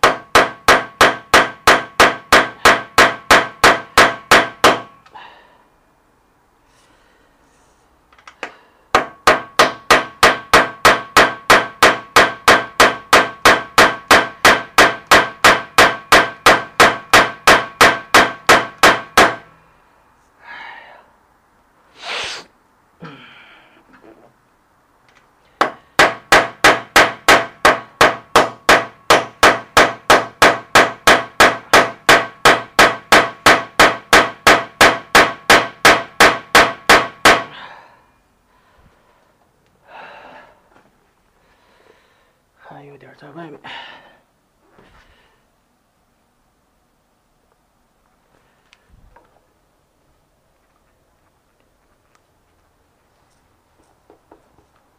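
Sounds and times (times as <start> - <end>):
hammer striking metal bearing: 0.0 - 5.0, 8.9 - 19.5, 25.6 - 37.5.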